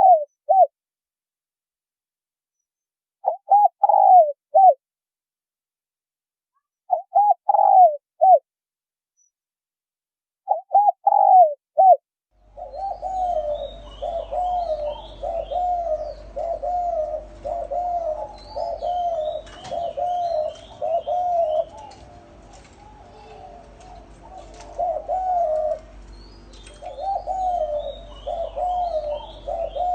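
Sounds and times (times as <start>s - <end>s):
doves cooing: 0.0s - 0.7s, 3.2s - 4.8s, 6.9s - 8.4s, 10.5s - 29.9s
small birds chirping: 10.5s - 29.9s
low steady hum: 12.4s - 29.9s.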